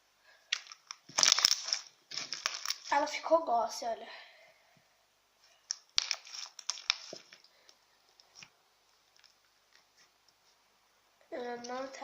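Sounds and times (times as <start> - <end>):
slime clicking and popping: 0.5 - 2.9, 5.7 - 7.4.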